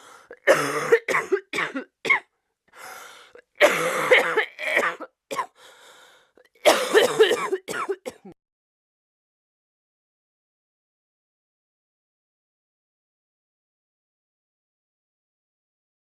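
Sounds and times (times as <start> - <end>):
woman coughing: 0.4 - 2.2, 3.6 - 5.6, 6.6 - 8.4.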